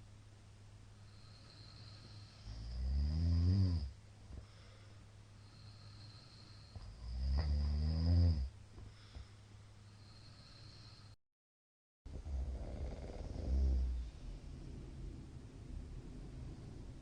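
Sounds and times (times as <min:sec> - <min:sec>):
quiet breathing: 0:00.9 - 0:11.2, 0:12.1 - 0:17.0
man snoring: 0:01.3 - 0:04.0, 0:05.6 - 0:08.5, 0:12.1 - 0:14.0.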